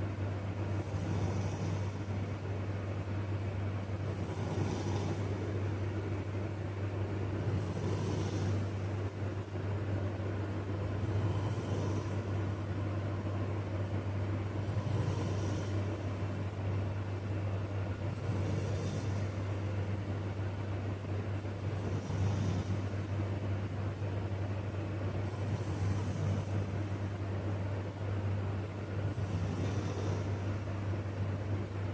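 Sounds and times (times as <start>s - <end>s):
steady low hum: 0.0s - 31.9s
man snoring: 0.6s - 2.4s, 3.9s - 6.4s, 7.0s - 9.9s, 10.5s - 12.9s, 14.4s - 16.6s, 17.9s - 19.8s, 21.6s - 23.2s, 25.1s - 27.0s, 28.9s - 30.7s.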